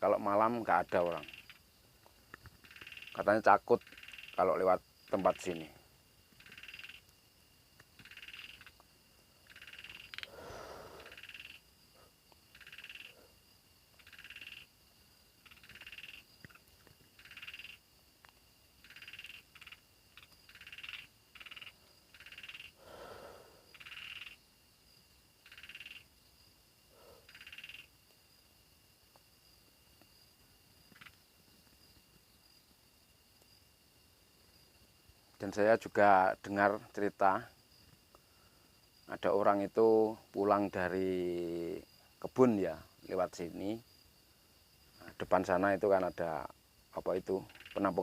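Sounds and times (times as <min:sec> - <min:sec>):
low frog croaks: 0:00.0 - 0:18.0, 0:18.8 - 0:28.2, 0:30.1 - 0:32.6, 0:44.7 - 0:48.0
frogs calling: 0:00.0 - 0:28.4, 0:29.4 - 0:32.6, 0:34.4 - 0:48.0
insect trill: 0:00.0 - 0:48.0.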